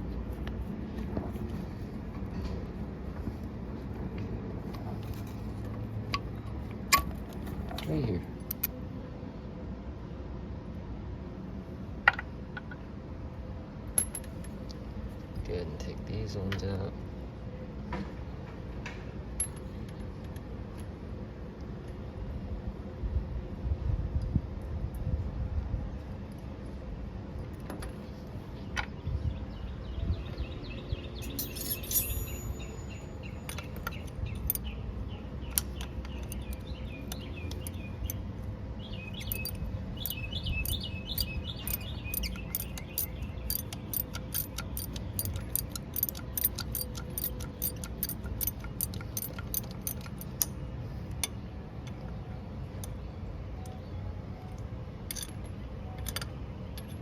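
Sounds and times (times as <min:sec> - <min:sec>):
tools clinking on metal: 0:14.0 - 0:14.6, 0:31.2 - 0:34.7, 0:39.2 - 0:50.5, 0:55.1 - 0:57.0
birds chirping: 0:28.6 - 0:49.3
ratchet clicking: 0:39.2 - 0:50.5.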